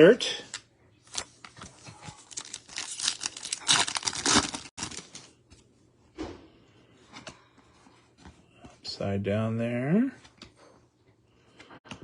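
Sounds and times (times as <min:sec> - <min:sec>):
wrapper tearing and crinkling: 0:02.2 - 0:05.3.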